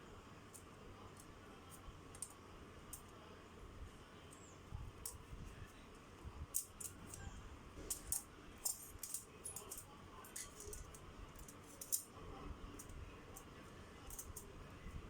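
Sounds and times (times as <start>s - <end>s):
plastic parts clicking and rattling: 7.9s - 12.1s.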